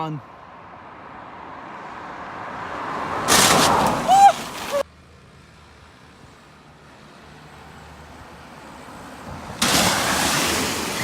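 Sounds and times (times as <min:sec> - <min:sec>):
car driving and speeding up: 0:00.7 - 0:04.8
wind noise on microphone: 0:09.2 - 0:11.0.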